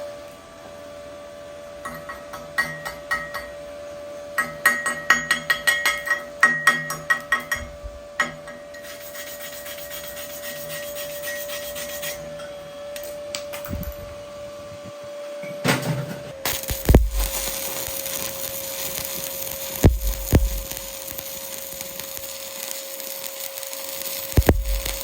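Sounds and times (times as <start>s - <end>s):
chipping hammer on metal: 4.4s - 8.7s, 16.5s - 21.2s, 24.4s - 25.0s
wire brush scratching: 8.8s - 12.4s, 16.4s - 25.0s.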